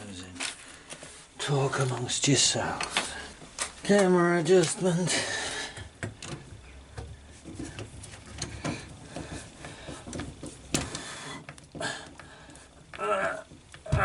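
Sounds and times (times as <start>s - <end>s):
equipment handling clicks and knocks: 5.8s - 13.9s.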